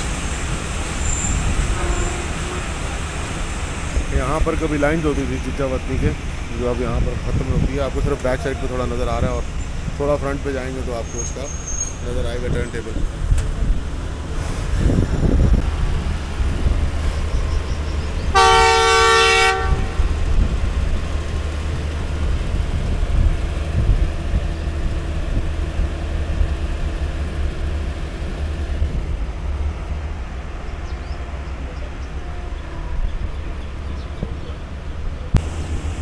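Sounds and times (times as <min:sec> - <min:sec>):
train rumbling: 0:00.0 - 0:36.0
locomotive horn: 0:01.7 - 0:02.9, 0:18.3 - 0:20.2.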